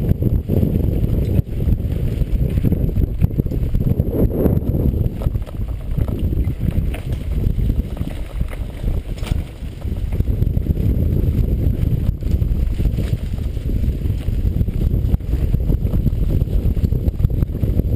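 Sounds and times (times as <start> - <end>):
wind buffeting microphone: 0.0 - 17.9
sharp clicks and rattles: 1.1 - 10.8.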